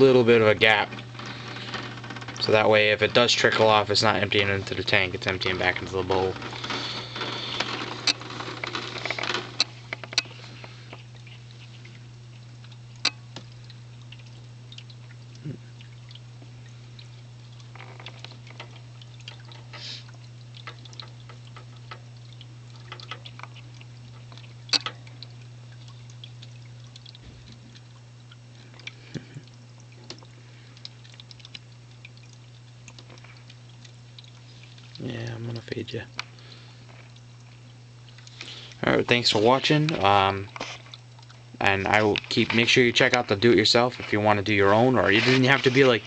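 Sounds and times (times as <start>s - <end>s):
steady low hum: 0.0s - 46.0s
tabletop waterfall trickling: 0.0s - 46.0s.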